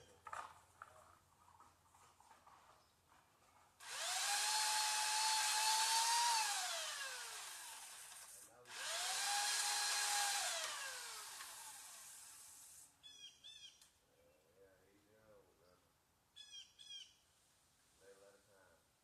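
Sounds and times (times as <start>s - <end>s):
chainsaw motor whining: 3.8s - 12.9s.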